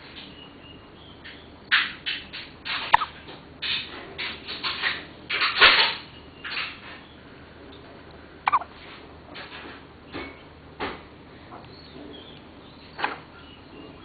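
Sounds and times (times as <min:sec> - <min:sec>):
cat hiccuping: 0:08.5 - 0:08.7.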